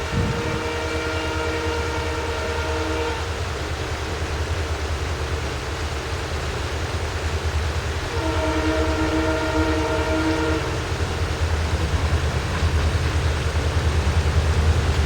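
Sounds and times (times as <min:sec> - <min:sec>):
locomotive horn blast: 0:00.0 - 0:03.5, 0:08.1 - 0:11.2
diesel locomotive rumbling: 0:00.0 - 0:15.0.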